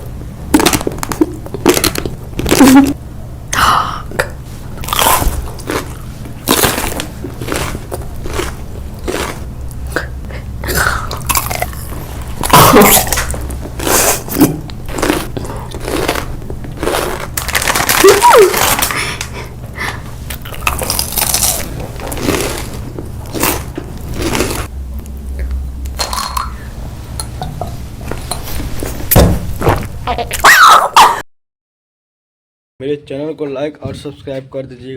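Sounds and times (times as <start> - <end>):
steady low hum: 0.0 - 30.4
crunchy chewing of food: 0.6 - 2.9, 4.6 - 24.7.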